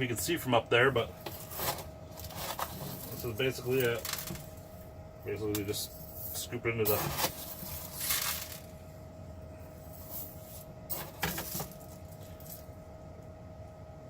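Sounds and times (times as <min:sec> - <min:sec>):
charcoal pellets rattling: 0:06.9 - 0:08.7.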